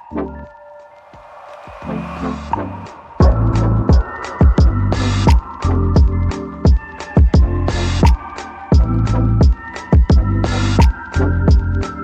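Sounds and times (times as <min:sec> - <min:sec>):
hissing swell: 0:00.8 - 0:05.0
electronic music with kick drum: 0:03.2 - 0:12.0.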